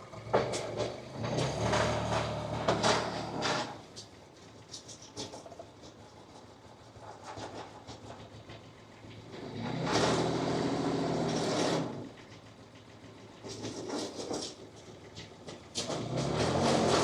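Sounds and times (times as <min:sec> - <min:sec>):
small diesel engine revving: 0:00.0 - 0:03.8, 0:09.2 - 0:12.2, 0:15.8 - 0:17.0.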